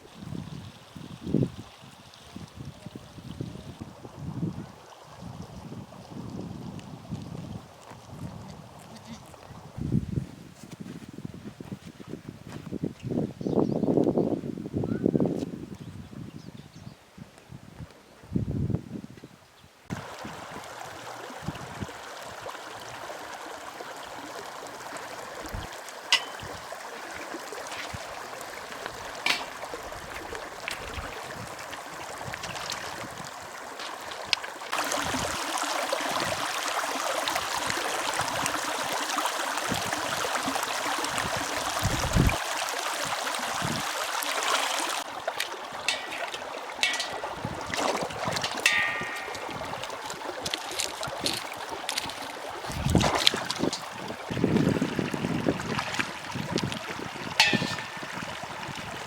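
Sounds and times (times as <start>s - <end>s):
stream water rushing: 19.9s - 59.0s.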